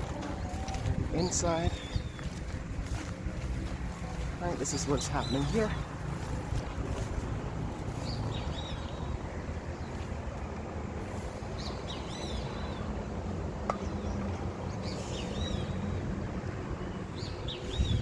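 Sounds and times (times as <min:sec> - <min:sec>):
bird chirping: 0:00.0 - 0:02.5
steady low rumble: 0:00.0 - 0:18.0.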